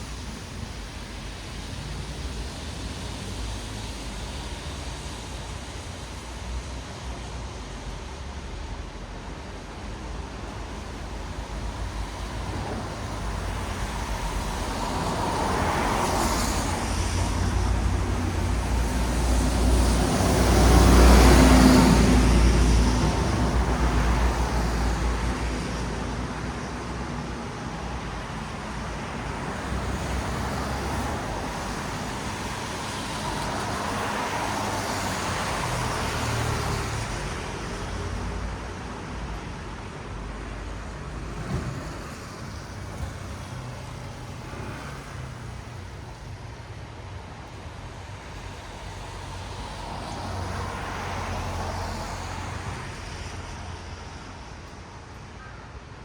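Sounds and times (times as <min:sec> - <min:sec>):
tyres hissing on wet road: 0:00.0 - 0:56.0
vehicle passing by: 0:12.7 - 0:25.8.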